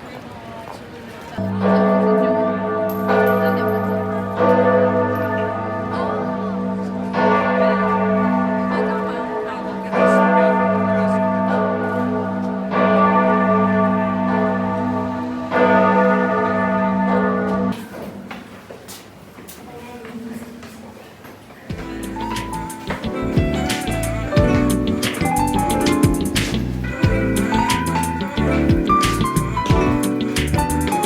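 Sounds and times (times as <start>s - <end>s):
church bell tolling: 1.4s - 18.3s, 21.7s - 31.0s
deep steady hum: 21.7s - 30.9s.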